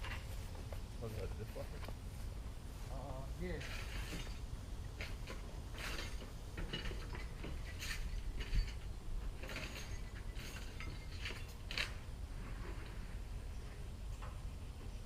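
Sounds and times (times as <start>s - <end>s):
scrap metal clinking and rattling: 3.5s - 13.0s.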